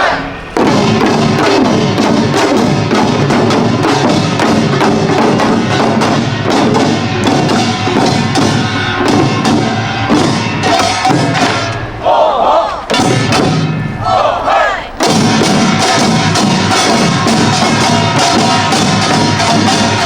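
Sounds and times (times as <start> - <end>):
barrel drums: 0.0 - 12.0, 12.6 - 20.0
hourglass drums: 0.0 - 12.0, 15.0 - 20.0
small gongs: 0.3 - 11.9, 15.0 - 20.0.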